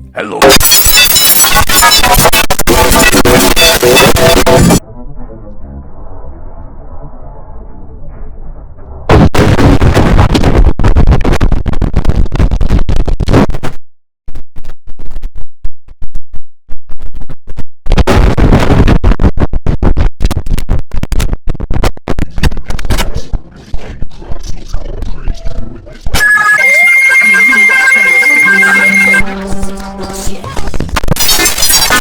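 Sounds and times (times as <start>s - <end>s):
distorted computer system sound: 0.3s - 10.6s, 26.1s - 32.0s.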